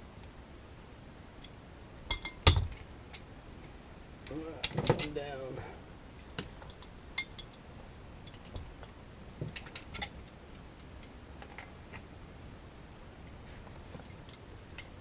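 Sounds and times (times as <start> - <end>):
light clicks and metallic clinks: 1.3 - 5.6, 6.2 - 12.0, 13.2 - 15.0.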